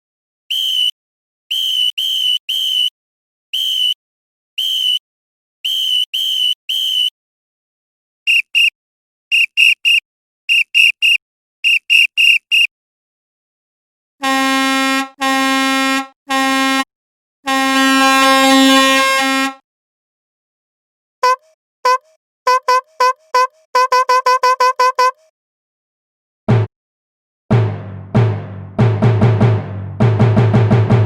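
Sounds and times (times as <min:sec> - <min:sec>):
whistle toots: 0:00.5 - 0:04.0, 0:04.6 - 0:05.0, 0:05.6 - 0:07.2, 0:08.3 - 0:12.7, 0:21.2 - 0:25.3
horn blasts: 0:14.2 - 0:16.9, 0:17.5 - 0:19.6, 0:21.2 - 0:25.3.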